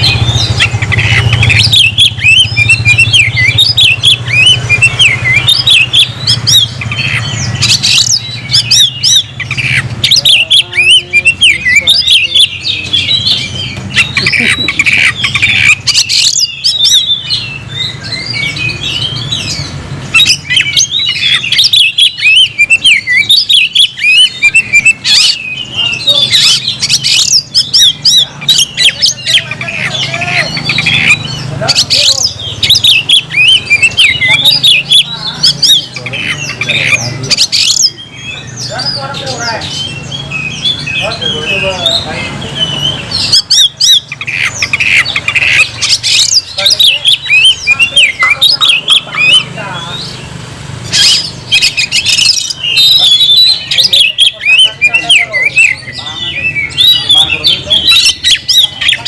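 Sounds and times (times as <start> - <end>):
bird singing chirps and squawks: 0.0 - 59.0.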